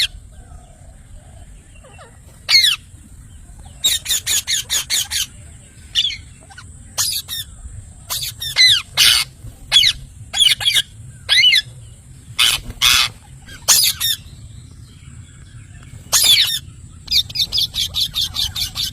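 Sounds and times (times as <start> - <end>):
parrot squawking: 1.8 - 2.8, 3.8 - 5.3, 6.0 - 7.5, 8.1 - 11.7, 12.4 - 14.2, 16.1 - 18.9.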